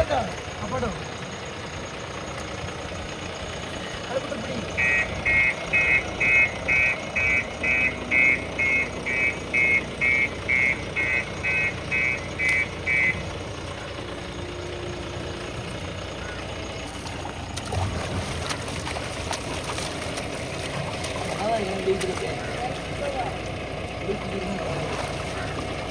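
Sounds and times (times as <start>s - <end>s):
diesel engine running: 0.0s - 25.9s
reversing alarm beeps: 4.8s - 13.6s.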